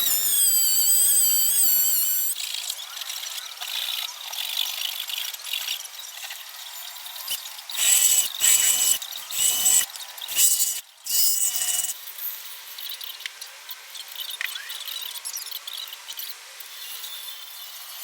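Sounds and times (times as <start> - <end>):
power tool whining: 0.0 - 2.4, 7.3 - 11.9.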